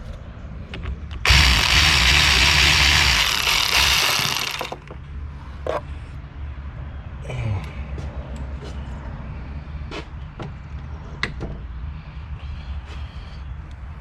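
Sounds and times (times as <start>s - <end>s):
power tool hissing and humming: 1.2s - 4.8s.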